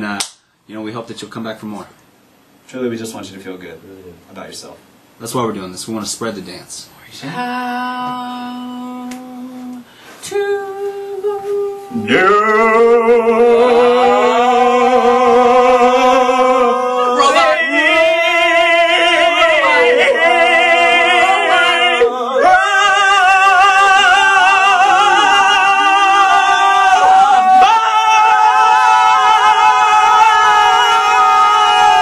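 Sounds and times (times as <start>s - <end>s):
person singing with vibrato: 7.2s - 32.0s.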